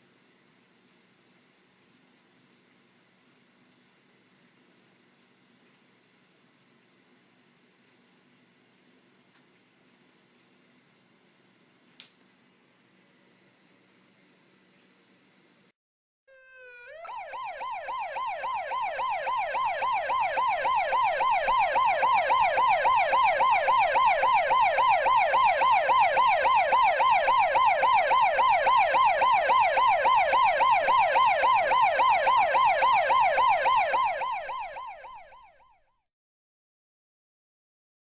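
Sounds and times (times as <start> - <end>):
electronic siren wailing: 16.3 - 35.8.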